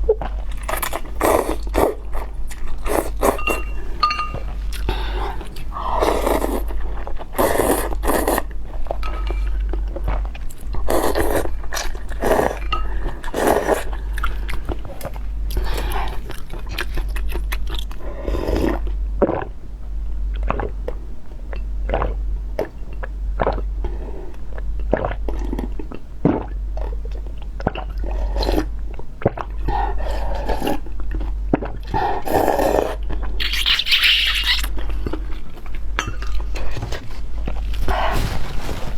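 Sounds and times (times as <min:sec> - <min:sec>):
person chewing crunchy food: 0:00.0 - 0:19.5, 0:30.3 - 0:38.9
scraping: 0:36.6 - 0:38.9.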